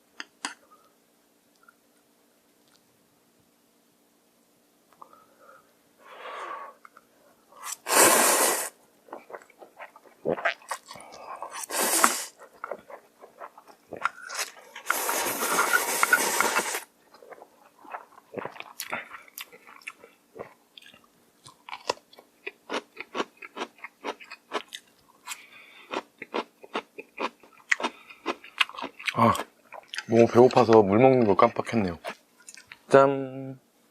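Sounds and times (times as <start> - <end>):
slurping noodles: 7.6 - 8.8, 10.3 - 16.9
crunchy chewing: 9.1 - 30.7.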